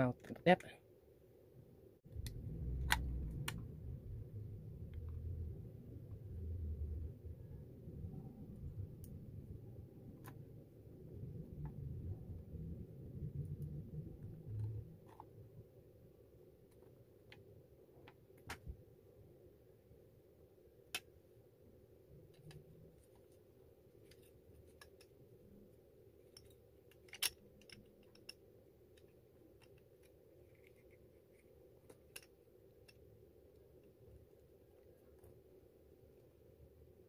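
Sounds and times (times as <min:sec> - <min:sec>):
low steady hum: 0:00.0 - 0:37.0
clicks and taps of small parts: 0:26.3 - 0:33.0.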